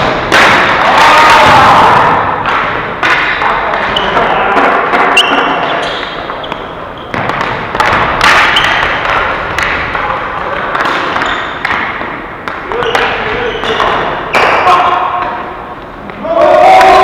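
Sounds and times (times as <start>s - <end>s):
background voices in a rink: 0.0s - 17.0s
sticks and ball knocking: 2.4s - 14.6s.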